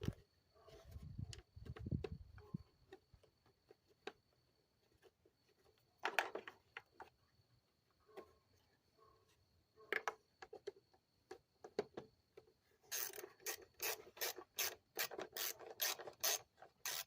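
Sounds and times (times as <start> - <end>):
hand tools clicking and knocking: 9.9 - 17.0.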